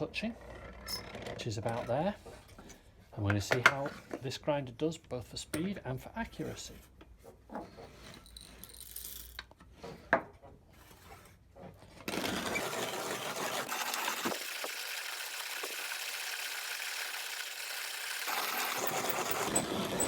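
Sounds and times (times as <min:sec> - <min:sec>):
coffee grinder crunching beans: 0:12.0 - 0:20.0.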